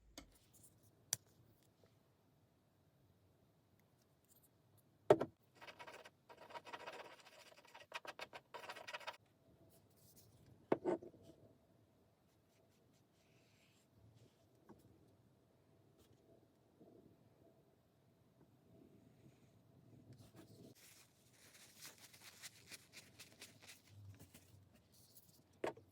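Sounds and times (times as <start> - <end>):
scraping and rustling: 20.3 - 25.4.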